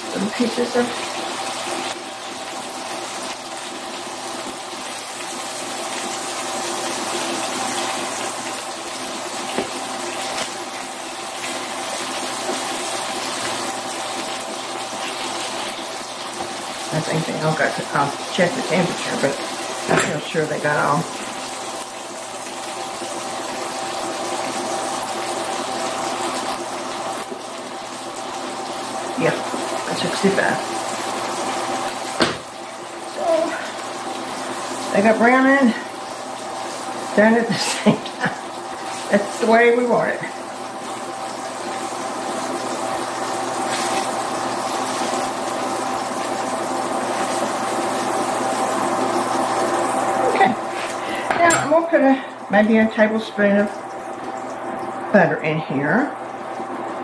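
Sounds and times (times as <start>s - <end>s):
chicken sizzling in a pan: 0.0s - 57.0s
cooktop hum and whine: 0.0s - 57.0s.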